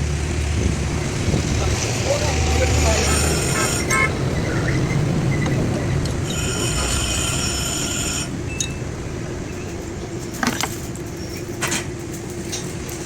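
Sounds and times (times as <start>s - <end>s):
truck engine humming: 0.0s - 13.0s.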